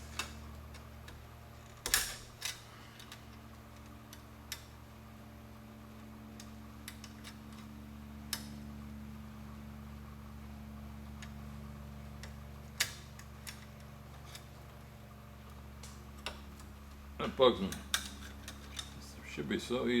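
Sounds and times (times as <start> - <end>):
screwdriver clicking and scraping metal: 17.6 - 19.0.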